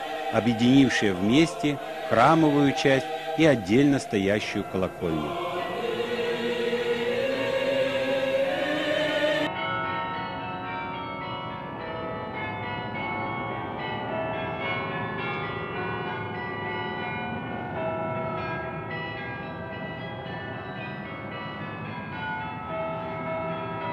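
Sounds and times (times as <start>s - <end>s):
choir singing: 0.0s - 9.5s
church bells pealing: 0.0s - 23.9s.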